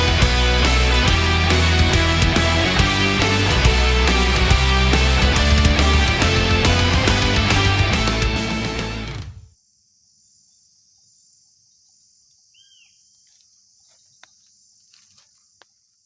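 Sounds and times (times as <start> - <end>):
rock music: 0.0 - 9.4
bird call: 12.5 - 15.4.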